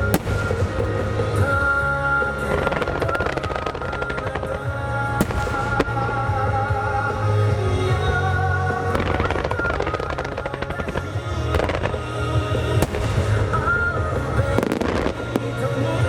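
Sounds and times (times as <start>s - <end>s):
firework bang: 0.0s - 3.6s, 5.2s - 7.2s, 12.8s - 15.2s
fireworks crackling: 0.0s - 16.0s
music soundtrack: 0.0s - 16.0s.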